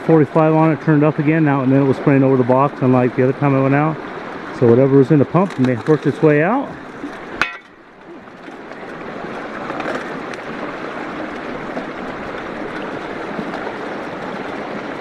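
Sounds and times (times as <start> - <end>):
water rushing through sluice box: 0.0 - 15.0.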